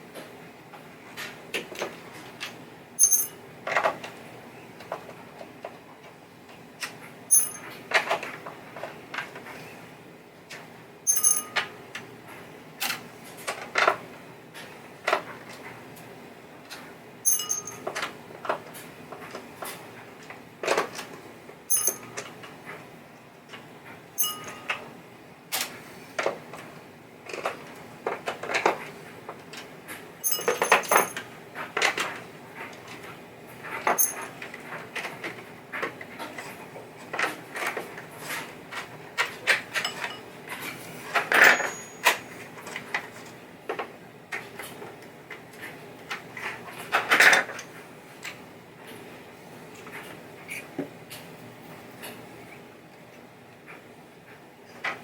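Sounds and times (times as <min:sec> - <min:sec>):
small metal parts clinking: 0:03.0 - 0:03.3, 0:07.3 - 0:07.7, 0:11.1 - 0:11.7, 0:17.3 - 0:17.9, 0:21.7 - 0:22.1, 0:30.2 - 0:31.2, 0:34.0 - 0:34.3.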